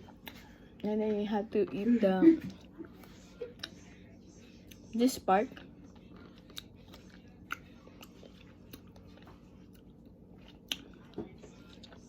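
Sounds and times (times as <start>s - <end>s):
person biting and chewing: 6.0s - 12.0s.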